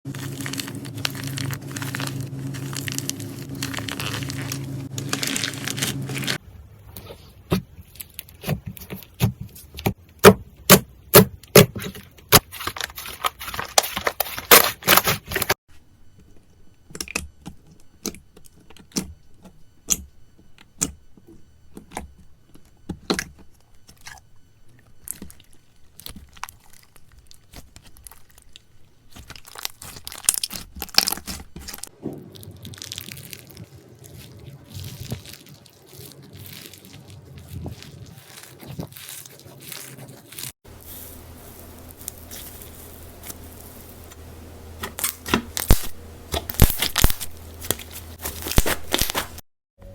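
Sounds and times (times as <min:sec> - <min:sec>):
slime crackling and popping: 0:00.1 - 0:06.4, 0:25.0 - 0:44.2, 0:44.8 - 0:49.4
low hum: 0:00.1 - 0:07.3, 0:40.7 - 0:49.0.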